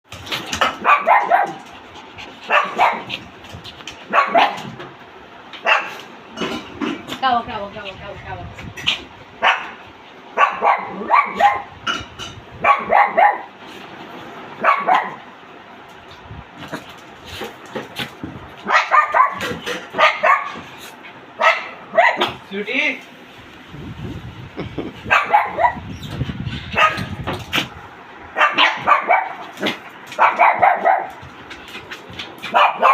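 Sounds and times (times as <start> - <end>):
puppy barking in high yaps: 0.7 - 1.6, 2.5 - 3.1, 4.1 - 4.8, 5.6 - 6.0, 9.4 - 9.8, 10.4 - 11.8, 12.6 - 13.5, 14.6 - 15.3, 18.6 - 20.6, 21.4 - 22.4, 25.1 - 26.0, 26.7 - 27.2, 28.4 - 31.2, 32.5 - 32.9.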